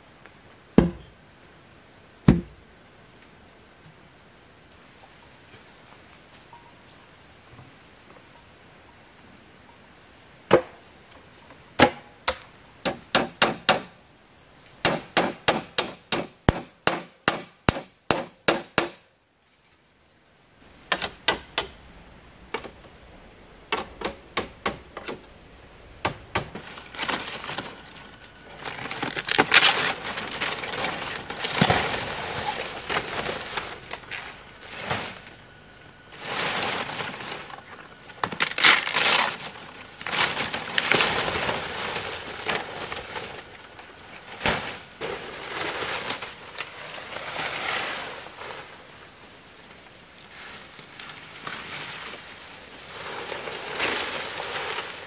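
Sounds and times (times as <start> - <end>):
chopping wood: 0.8 - 1.1, 2.3 - 2.6, 11.8 - 13.9, 14.8 - 19.0
rustling handling noise: 24.9 - 35.4.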